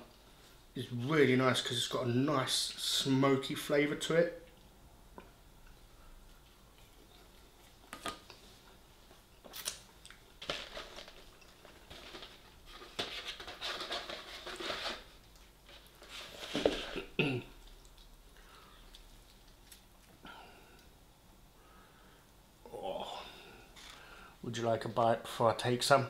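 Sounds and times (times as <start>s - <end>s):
person chewing: 16.9s - 20.2s.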